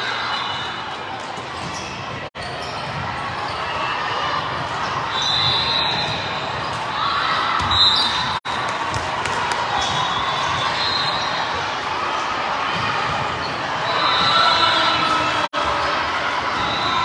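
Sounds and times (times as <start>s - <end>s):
ball bouncing on hard court: 7.6s - 10.8s
spectator chatter: 8.1s - 10.8s.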